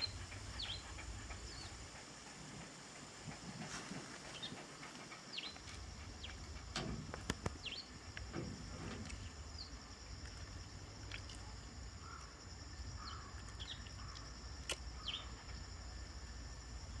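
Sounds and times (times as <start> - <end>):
birds chirping: 0.0 - 10.5
steady high-pitched hiss: 0.0 - 17.0.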